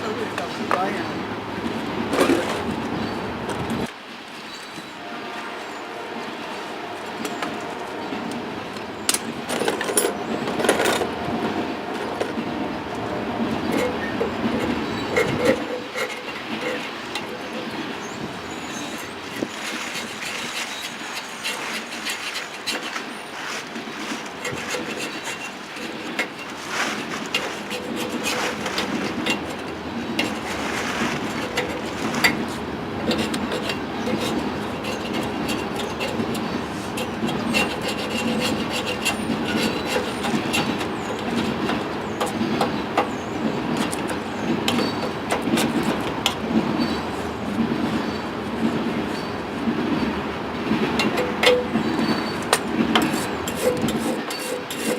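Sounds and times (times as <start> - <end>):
scraping and rubbing on metal: 13.4 - 46.1, 51.0 - 54.9.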